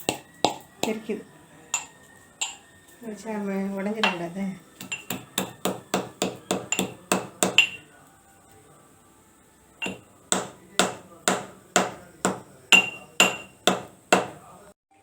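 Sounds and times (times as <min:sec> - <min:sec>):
pestle pounding in mortar: 0:00.0 - 0:01.0, 0:04.8 - 0:07.8, 0:09.8 - 0:14.4.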